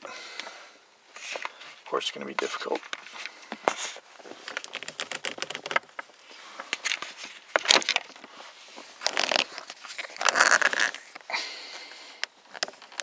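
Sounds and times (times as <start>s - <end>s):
plastic scrapes: 2.4s - 11.2s
plastic clicks and creaks: 4.4s - 6.1s, 9.0s - 11.3s, 12.2s - 13.0s.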